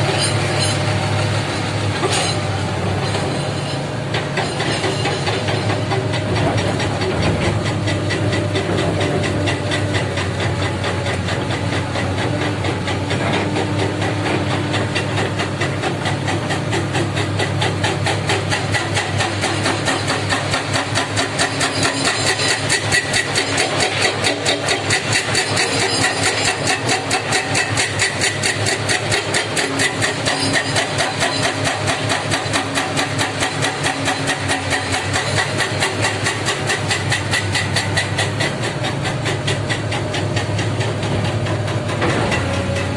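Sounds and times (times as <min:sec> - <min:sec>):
heavy diesel engine running: 0:00.0 - 0:42.9.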